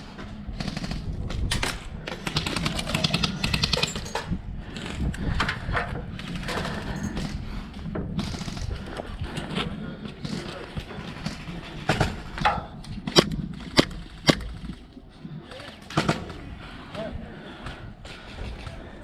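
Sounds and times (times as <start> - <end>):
airsoft guns firing bursts: 0.3 - 4.2, 8.2 - 9.0, 10.2 - 15.0.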